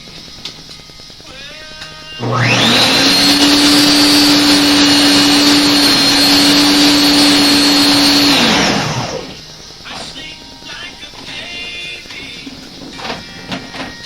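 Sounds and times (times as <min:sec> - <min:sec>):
motor-driven machine spinning: 0:02.2 - 0:10.2.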